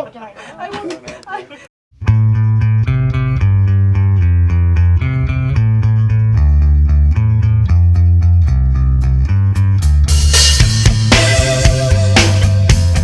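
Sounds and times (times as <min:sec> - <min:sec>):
instrumental bass and guitar music: 0:02.0 - 0:13.0.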